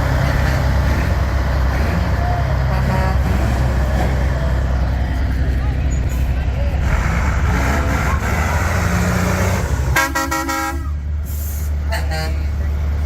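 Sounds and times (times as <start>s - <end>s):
diesel truck engine running: 0.0s - 13.0s
truck air horn blasts: 2.6s - 4.0s, 7.6s - 12.6s.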